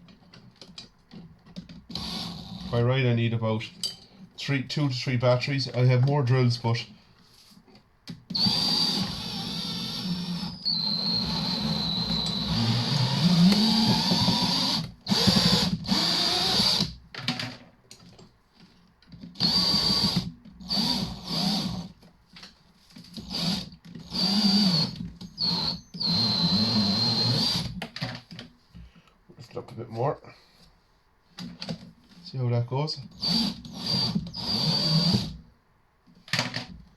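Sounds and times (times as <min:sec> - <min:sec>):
cordless drill whining: 0:01.8 - 0:02.7, 0:08.3 - 0:17.0, 0:19.2 - 0:22.0, 0:23.1 - 0:27.8, 0:33.1 - 0:35.4.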